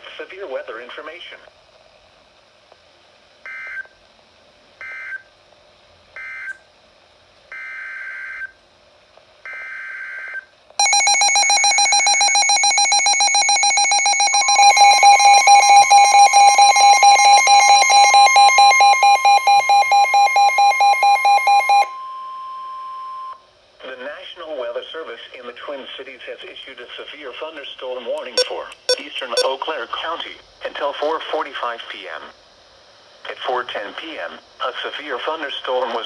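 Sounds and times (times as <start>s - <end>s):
screeching electronic data bursts: 10.8s - 21.9s
pulsing electronic alert tone: 10.8s - 22.0s
steady high tone: 10.8s - 23.4s.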